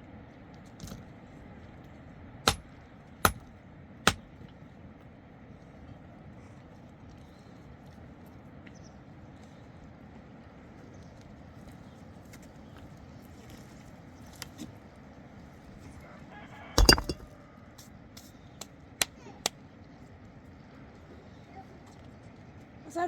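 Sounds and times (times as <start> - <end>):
hard objects clinking and knocking: 16.8 - 17.3.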